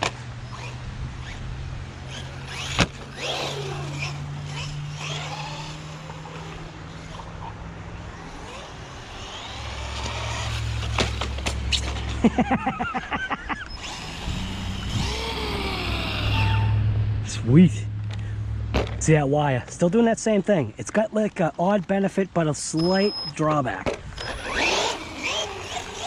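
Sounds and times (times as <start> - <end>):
rc car motor whine: 0.0 - 12.2, 13.6 - 16.7, 24.2 - 26.0.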